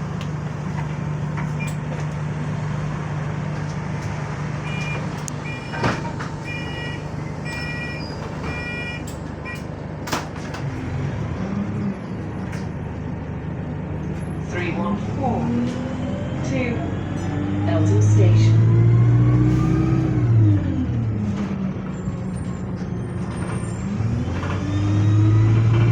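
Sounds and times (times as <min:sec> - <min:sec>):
bus engine humming: 0:00.0 - 0:25.9
short electronic beeps: 0:04.6 - 0:05.8, 0:06.5 - 0:09.7.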